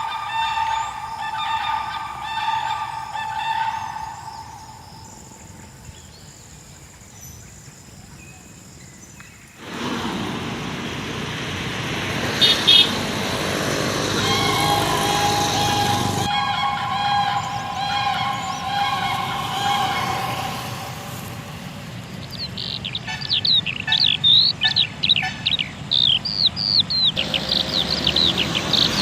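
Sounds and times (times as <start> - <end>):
birds honking: 0.0 - 6.0, 9.6 - 29.0
steady rushing noise: 9.6 - 22.6.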